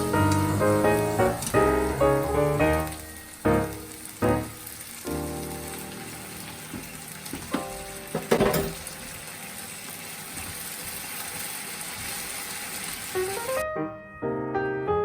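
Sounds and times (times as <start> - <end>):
food sizzling in a frying pan: 0.0 - 13.6
utensil knocking against pan: 6.8 - 8.9.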